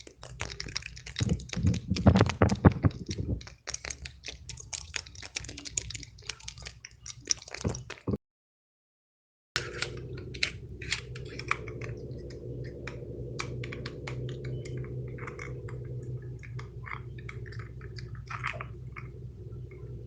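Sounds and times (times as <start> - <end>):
steady low hum: 0.0 - 4.1, 9.6 - 20.0.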